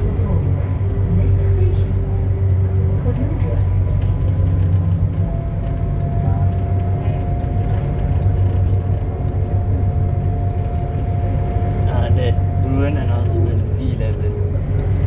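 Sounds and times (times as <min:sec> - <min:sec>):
train low rumble: 0:00.0 - 0:15.0.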